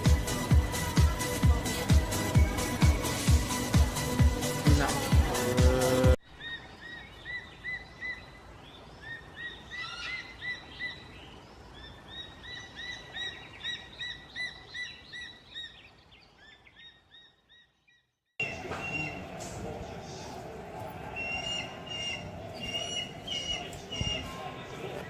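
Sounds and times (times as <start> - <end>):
eagle calling: 9.0 - 11.1, 21.1 - 24.7.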